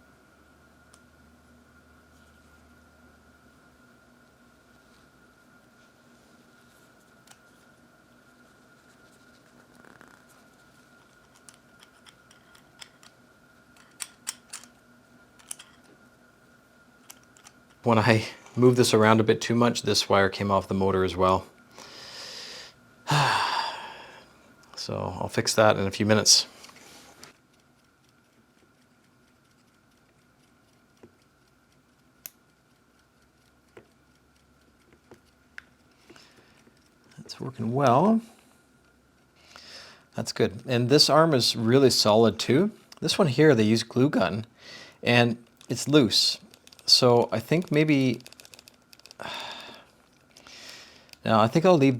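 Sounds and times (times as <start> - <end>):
faint steady hum: 0.0 - 51.9
plastic parts clicking: 13.8 - 14.8, 15.4 - 15.9, 46.4 - 51.3.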